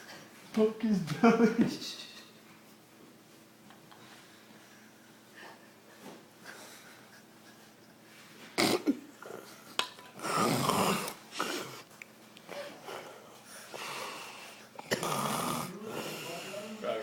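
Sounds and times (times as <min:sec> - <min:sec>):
quiet breaths: 0:09.2 - 0:14.9, 0:15.6 - 0:17.0
man snoring: 0:10.2 - 0:11.7, 0:13.9 - 0:16.8.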